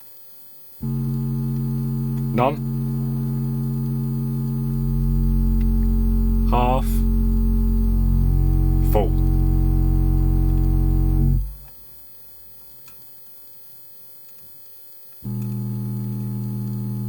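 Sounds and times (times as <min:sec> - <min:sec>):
low bass test tone: 0:00.8 - 0:11.7.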